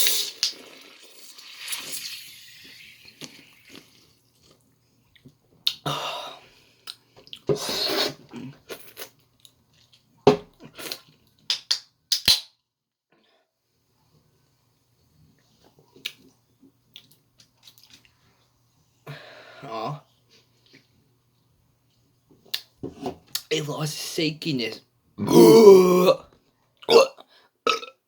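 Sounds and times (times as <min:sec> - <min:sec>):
soda can fizzing and hissing: 0:00.0 - 0:04.0.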